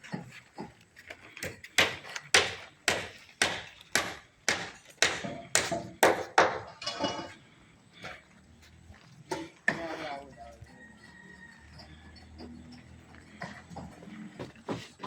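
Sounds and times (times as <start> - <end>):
hammer strikes: 1.4 - 7.3.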